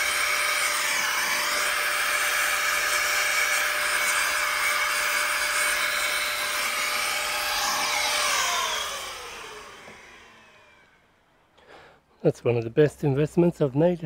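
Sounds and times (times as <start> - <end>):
electric air blower whining: 0.0 - 11.3.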